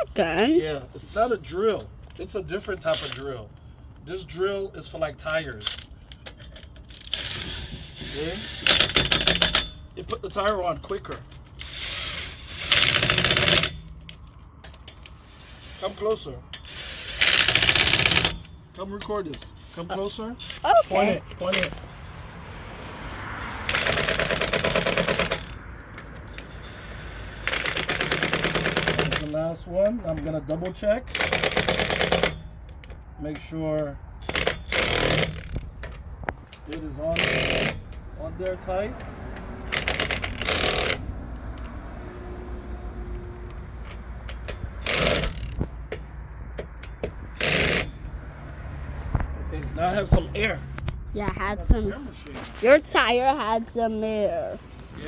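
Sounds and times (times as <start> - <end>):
impact wrench rattling: 5.6 - 9.8, 11.1 - 15.2, 16.6 - 20.6, 23.7 - 29.4, 31.1 - 33.5, 34.2 - 38.1, 39.6 - 41.7, 43.8 - 48.2.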